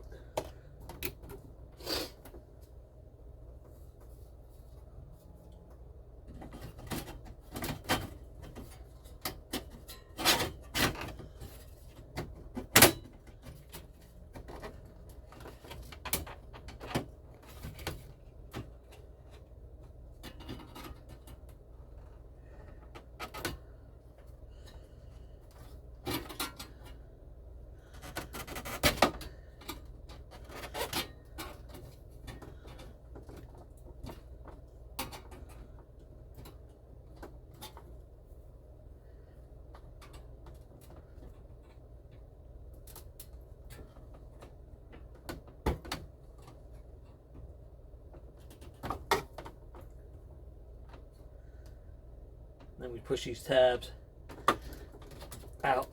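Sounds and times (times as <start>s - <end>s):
low steady hum: 0.0s - 55.9s
clicks and knocks from handling parts: 5.7s - 24.8s, 39.6s - 50.2s.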